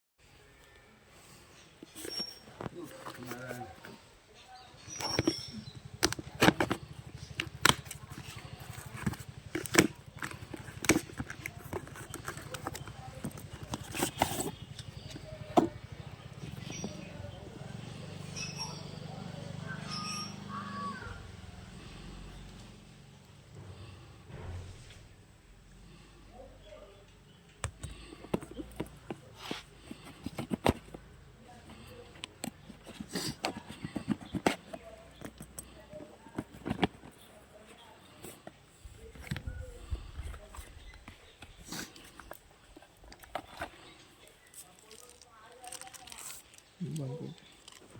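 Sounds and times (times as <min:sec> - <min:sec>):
packaging rustle: 0:04.9 - 0:17.2, 0:31.7 - 0:47.9
box knocks and clicks: 0:05.0 - 0:17.1.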